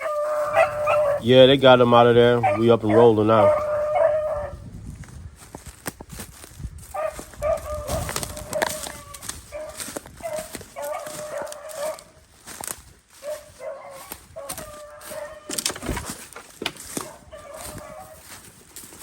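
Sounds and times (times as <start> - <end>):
hounds baying: 0.0 - 4.7, 6.9 - 16.2, 16.8 - 19.0
sharp snaps and crackles: 7.4 - 12.8, 15.5 - 17.9.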